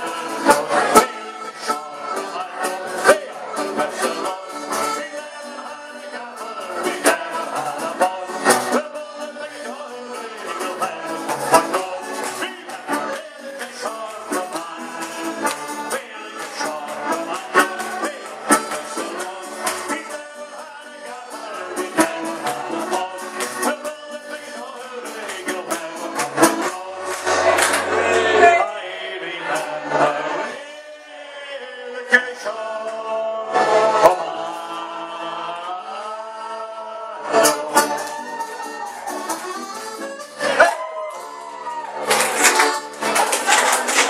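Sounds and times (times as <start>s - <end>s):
live dance band playing: 25.0s - 28.6s, 37.7s - 44.0s.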